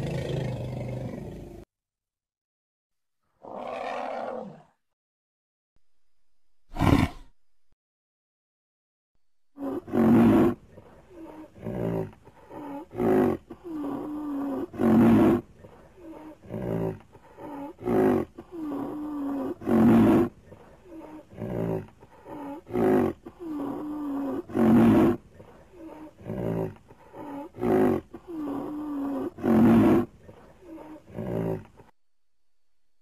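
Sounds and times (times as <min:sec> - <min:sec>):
creature roaring: 0:03.4 - 0:04.7, 0:06.7 - 0:07.3.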